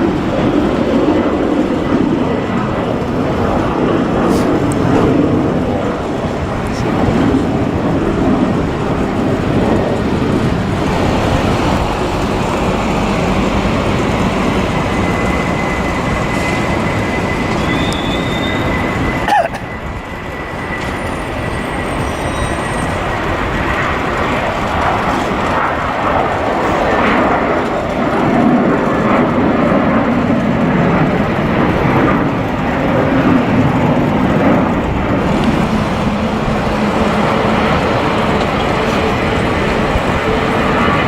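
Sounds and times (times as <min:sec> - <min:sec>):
jet engines rumbling: 0:00.0 - 0:41.0
falling whistle: 0:15.4 - 0:19.2, 0:20.7 - 0:23.0.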